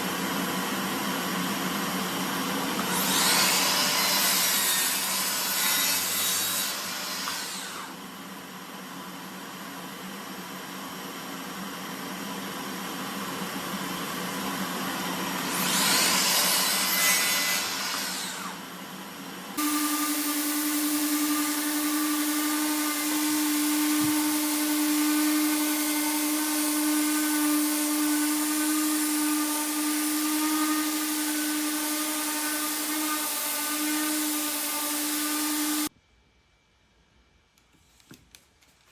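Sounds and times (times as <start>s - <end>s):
power tool motor humming: 19.6s - 35.9s.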